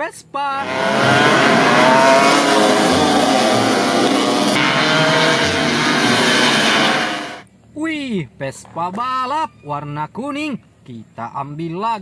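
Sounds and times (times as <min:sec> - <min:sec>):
loud motor running: 0:00.6 - 0:07.4.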